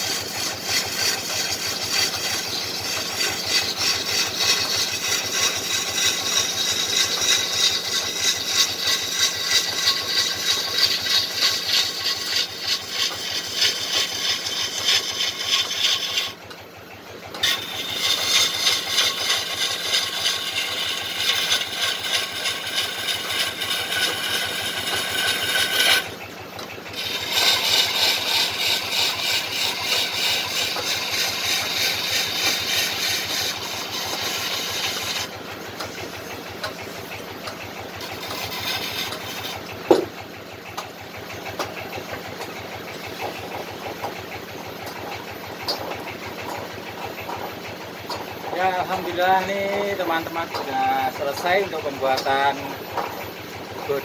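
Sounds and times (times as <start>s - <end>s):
hand tool scraping on wood lathe: 0.0s - 54.0s.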